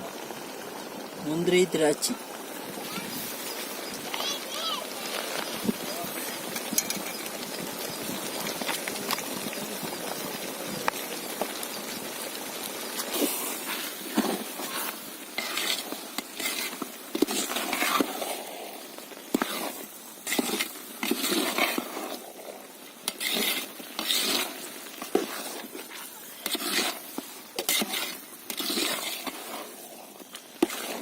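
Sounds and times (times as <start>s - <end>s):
faint steady hiss: 0.0s - 31.0s
ladle stirring and scraping pan: 5.1s - 9.5s, 11.3s - 31.0s.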